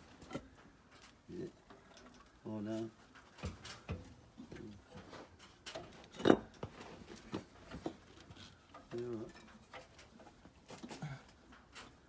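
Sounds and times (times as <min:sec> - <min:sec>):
metal clinks and knocks: 0:03.1 - 0:12.0.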